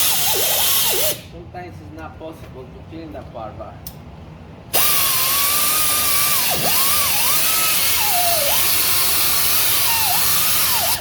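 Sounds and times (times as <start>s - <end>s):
power tool whine on metal: 4.8s - 11.0s.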